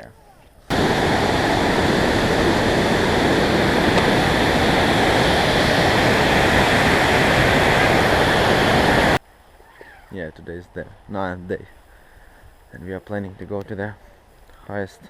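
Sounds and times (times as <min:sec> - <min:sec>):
rushing mountain water: 0:00.7 - 0:09.2.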